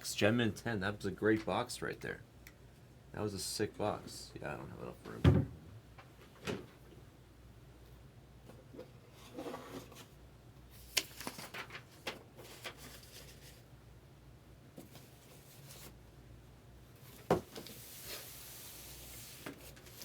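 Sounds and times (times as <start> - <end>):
cards rustling: 10.8 - 13.6.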